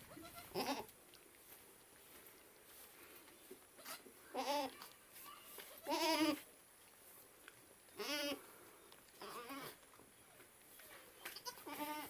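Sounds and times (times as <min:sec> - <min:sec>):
goat bleating: 0:00.0 - 0:00.9, 0:03.8 - 0:04.9, 0:05.7 - 0:06.4, 0:08.0 - 0:08.4, 0:09.2 - 0:09.8, 0:11.3 - 0:12.0.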